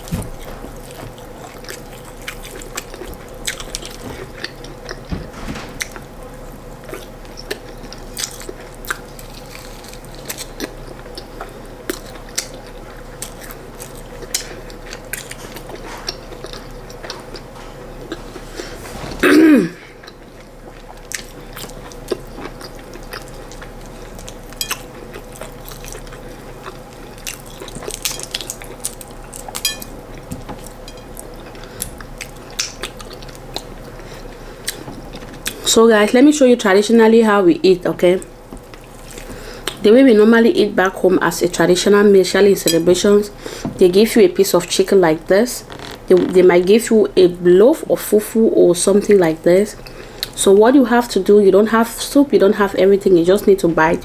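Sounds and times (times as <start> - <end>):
wet chewing: 0.0 - 5.2, 6.8 - 18.3, 20.0 - 35.7.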